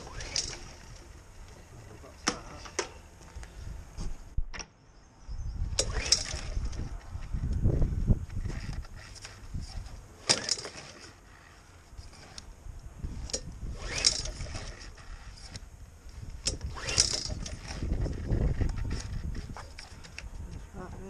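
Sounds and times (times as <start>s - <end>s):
pull-cord starter whirring: 0.0s - 1.2s, 5.8s - 7.6s, 8.2s - 20.3s.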